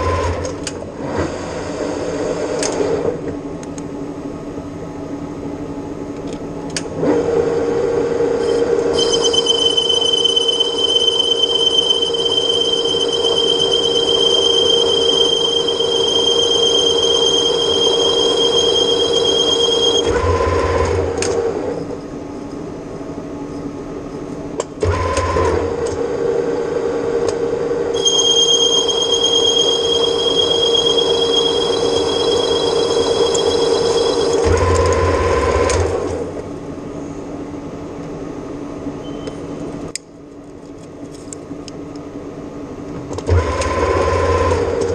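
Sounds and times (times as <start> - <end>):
lathe machine hum: 7.0 - 22.2, 24.8 - 36.9
high whistling cutting whine: 8.4 - 22.0, 27.9 - 35.8.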